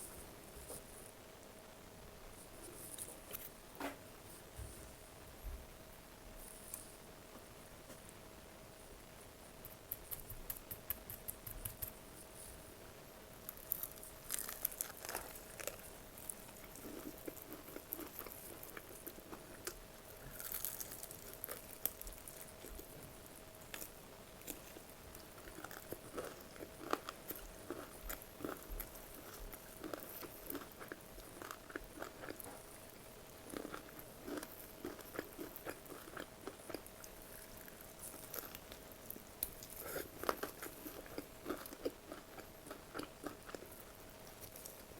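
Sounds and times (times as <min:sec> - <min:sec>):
faint hum: 0:00.0 - 0:44.9
chewing and crunching food: 0:13.4 - 0:44.9.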